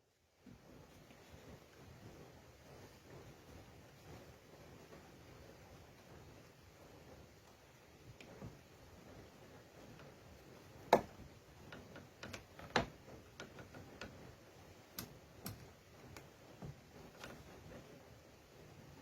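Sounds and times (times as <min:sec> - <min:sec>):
light clicks and taps: 0:09.8 - 0:17.8.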